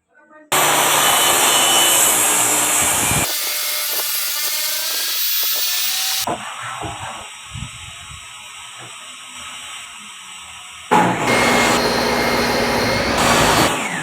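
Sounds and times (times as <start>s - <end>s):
table saw cutting wood: 0.5s - 7.5s, 10.9s - 14.0s.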